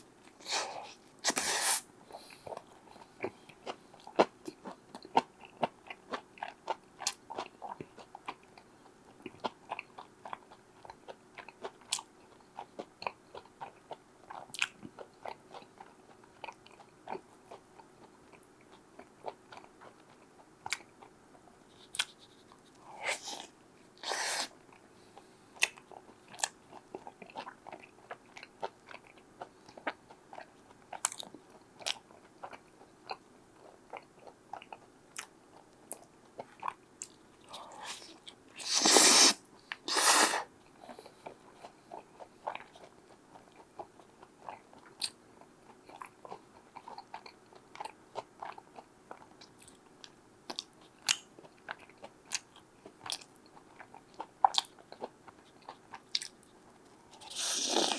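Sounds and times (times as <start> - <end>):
chewing pizza: 2.1 - 57.9.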